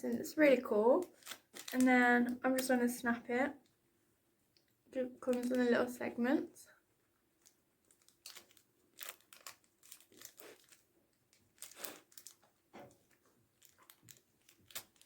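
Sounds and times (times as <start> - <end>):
wrapper rustling: 0.6 - 2.7, 7.4 - 15.0
chocolate being chewed: 7.4 - 15.0.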